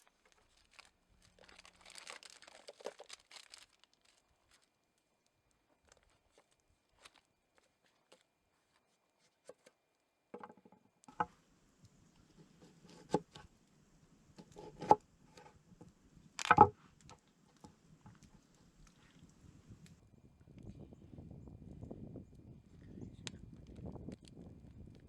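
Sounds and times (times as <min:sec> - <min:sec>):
wood knocking and cracking: 0:10.4 - 0:11.4, 0:12.2 - 0:13.5, 0:14.3 - 0:19.9.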